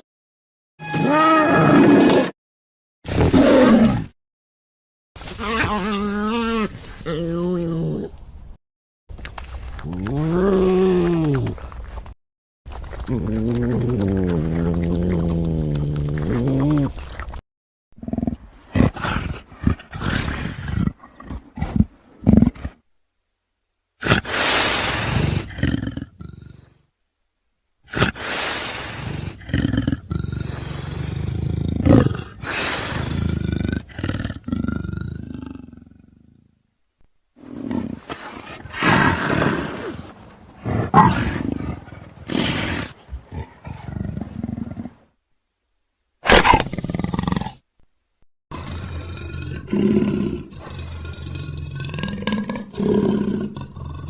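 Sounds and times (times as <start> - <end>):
creature roaring: 1.0 - 2.4, 40.7 - 44.3, 48.5 - 54.0.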